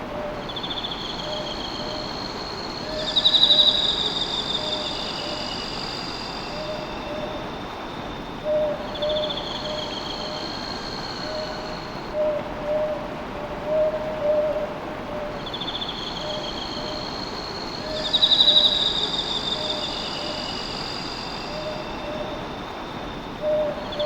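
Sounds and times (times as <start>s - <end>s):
insects trilling: 0.0s - 24.0s.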